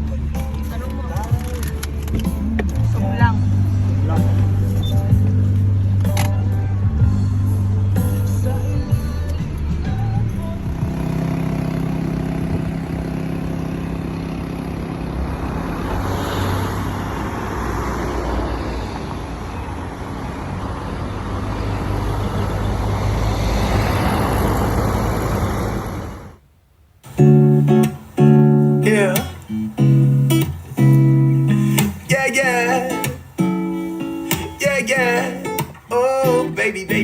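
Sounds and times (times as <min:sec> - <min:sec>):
vehicle engine running: 0:00.0 - 0:26.4
rushing travel noise: 0:00.0 - 0:37.0.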